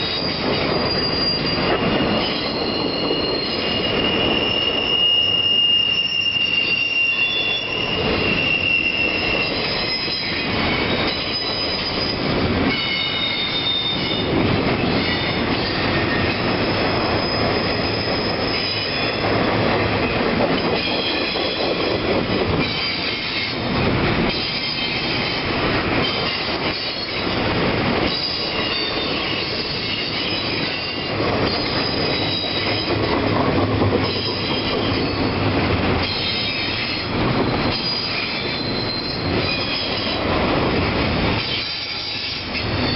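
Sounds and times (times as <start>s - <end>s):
freight train rumble: 0.0s - 42.9s
wheels squealing on rails: 0.0s - 42.9s.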